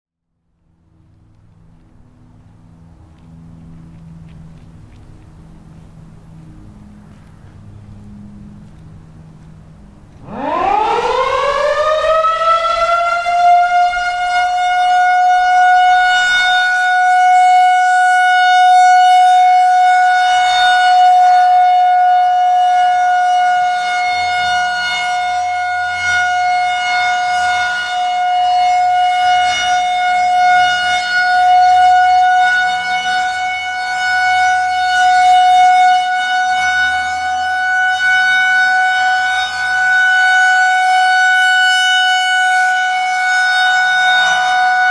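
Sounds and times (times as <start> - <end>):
warning siren winding up: 10.1 - 44.9.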